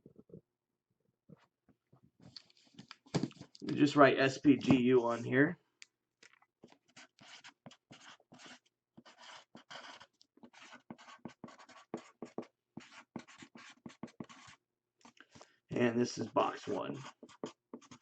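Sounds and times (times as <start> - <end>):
pen scratching on a box: 6.6 - 14.6, 16.0 - 18.0.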